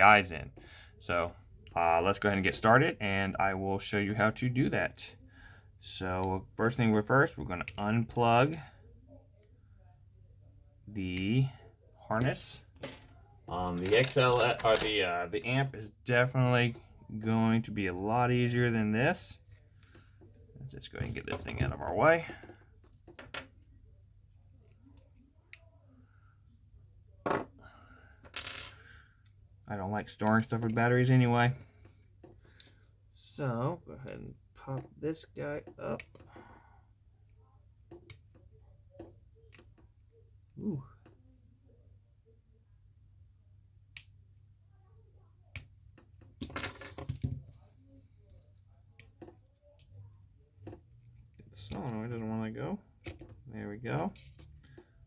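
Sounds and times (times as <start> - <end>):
low steady hum: 0.0 - 55.0.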